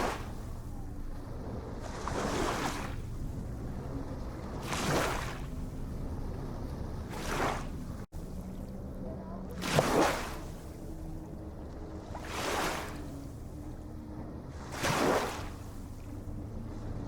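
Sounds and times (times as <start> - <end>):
steady low rumble: 0.0 - 9.6
ocean waves washing in: 0.0 - 17.0.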